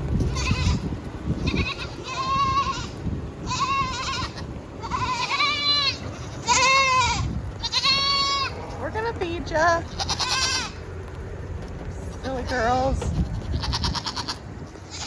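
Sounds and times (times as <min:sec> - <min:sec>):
goats bleating: 0:00.2 - 0:08.7, 0:09.7 - 0:10.9, 0:12.1 - 0:15.0.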